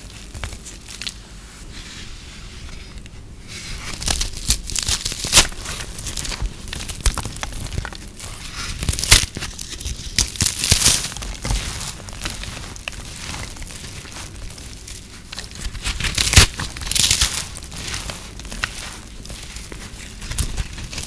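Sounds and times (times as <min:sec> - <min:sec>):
hands crushing brittle soap: 0:00.0 - 0:01.2, 0:03.6 - 0:21.0.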